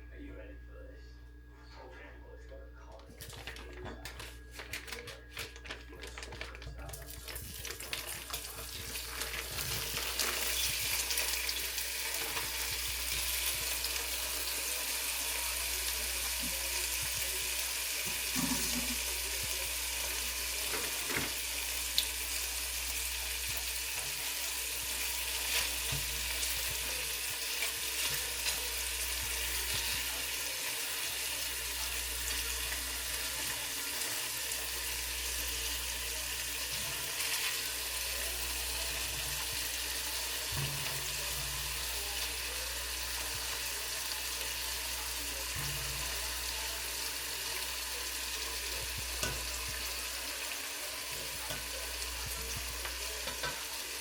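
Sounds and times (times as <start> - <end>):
food sizzling in a pan: 7.2 - 54.0
small pops of frying: 48.8 - 50.0, 51.3 - 53.8.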